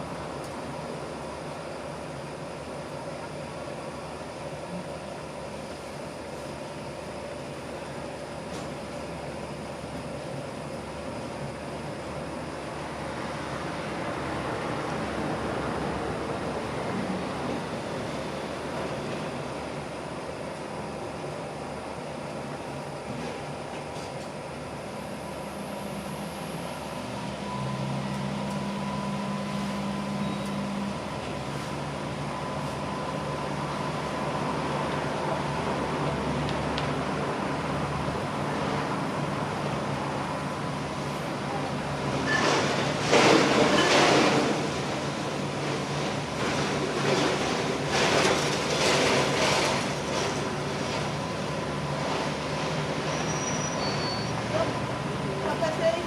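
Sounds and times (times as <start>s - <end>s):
laundry machines humming: 0.0s - 53.0s.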